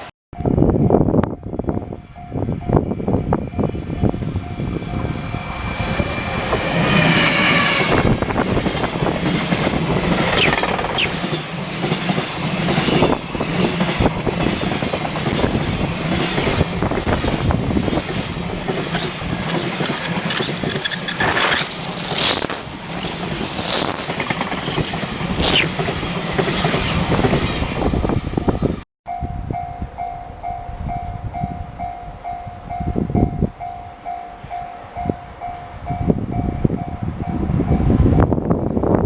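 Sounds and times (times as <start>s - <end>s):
train rumbling past: 0.0s - 39.0s
wheels squealing: 3.8s - 12.1s, 15.3s - 28.2s
wheels clattering on rails: 4.0s - 28.6s.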